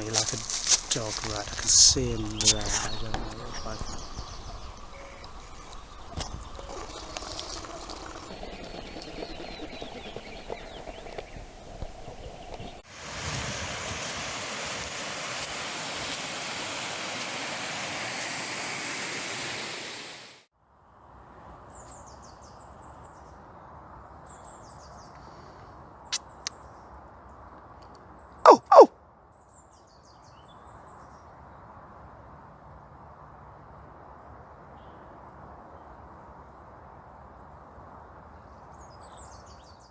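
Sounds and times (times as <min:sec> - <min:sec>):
open-air background noise: 0:00.0 - 0:39.9
water rushing: 0:12.9 - 0:20.4.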